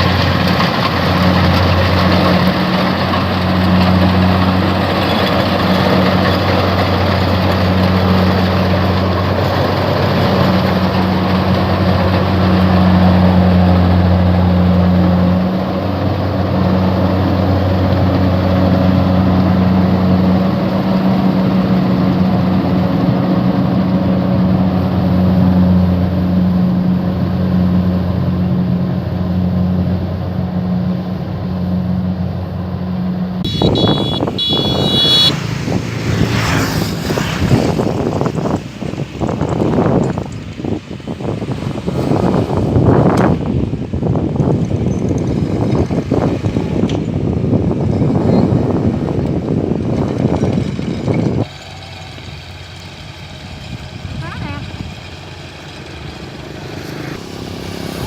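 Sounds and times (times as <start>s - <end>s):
combine harvester engine drone: 0.0s - 58.0s
mechanical rush: 33.4s - 58.0s.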